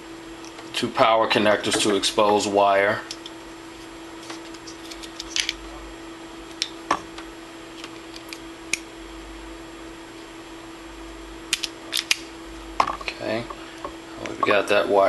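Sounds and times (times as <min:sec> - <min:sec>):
steady hum: 0:00.0 - 0:15.0
wire stripper clicking and snipping: 0:11.5 - 0:12.3.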